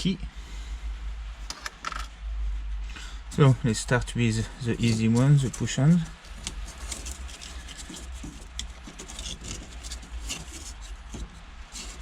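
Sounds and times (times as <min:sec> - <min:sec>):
steady low hum: 0:00.0 - 0:12.0
clicks taps and scratching: 0:04.7 - 0:12.0.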